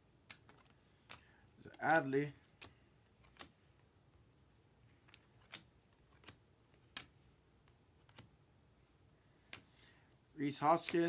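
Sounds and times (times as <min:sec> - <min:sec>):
trading cards flipping: 0:00.2 - 0:03.6.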